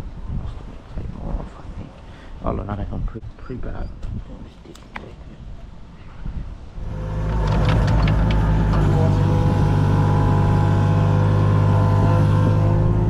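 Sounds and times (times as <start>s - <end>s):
engine starting and idling: 6.8s - 13.0s.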